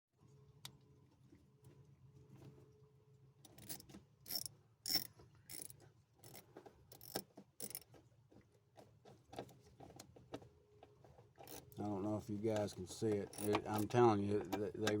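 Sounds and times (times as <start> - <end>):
metallic clicks of hand tools: 3.5 - 7.9, 11.4 - 11.8, 12.5 - 15.0.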